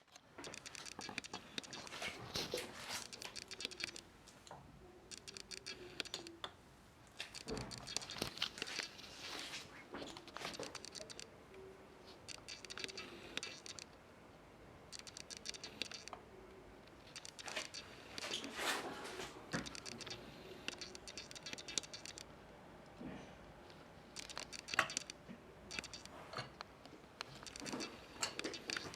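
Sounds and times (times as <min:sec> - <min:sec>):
small clicks: 0:00.0 - 0:09.0, 0:10.1 - 0:11.3, 0:12.2 - 0:14.0, 0:14.9 - 0:18.5, 0:19.5 - 0:22.3, 0:24.1 - 0:28.9
rustling handling noise: 0:07.1 - 0:11.2.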